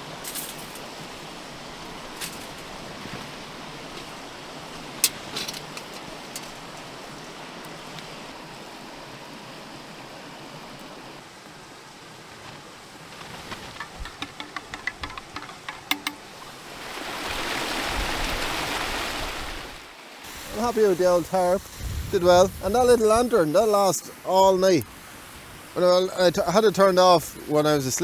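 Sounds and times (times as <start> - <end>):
river rushing: 0.0 - 28.0
sharp clicks and taps: 13.8 - 16.3.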